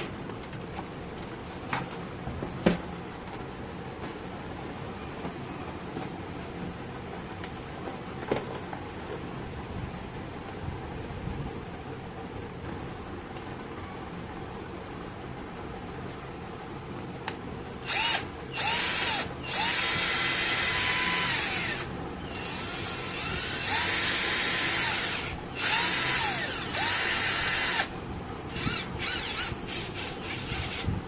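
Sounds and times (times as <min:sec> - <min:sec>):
cordless drill motor whine: 0:17.8 - 0:31.0.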